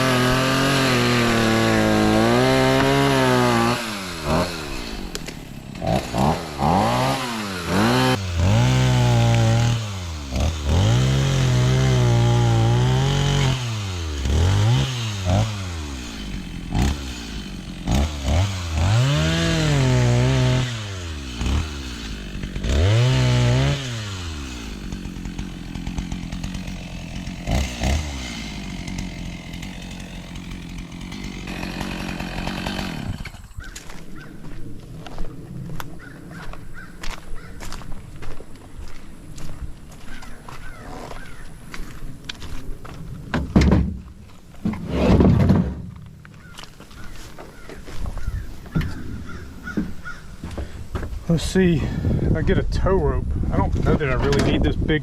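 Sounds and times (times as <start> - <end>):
chainsaw revving and idling: 0.0 - 34.0, 49.3 - 53.0.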